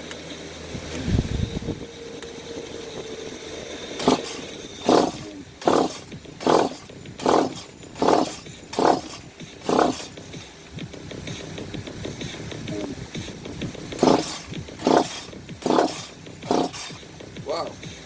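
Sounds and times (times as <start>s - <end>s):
chainsaw recoil starter pulls: 4.0s - 10.5s, 14.0s - 17.0s.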